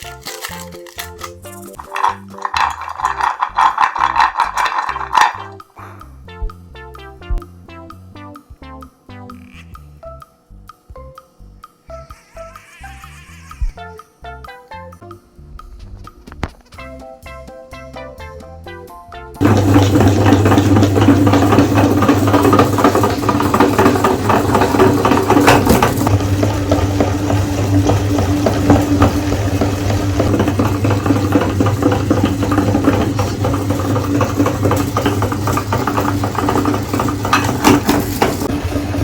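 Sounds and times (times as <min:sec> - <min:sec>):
crunching and rattling: 0:00.0 - 0:05.7, 0:19.4 - 0:38.5
electric meat grinder motor hum: 0:19.4 - 0:39.0.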